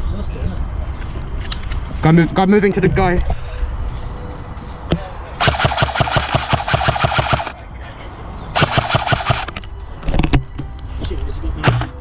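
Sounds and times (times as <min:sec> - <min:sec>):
airsoft rifle automatic fire: 0:05.4 - 0:07.5, 0:08.6 - 0:09.5, 0:11.6 - 0:12.0.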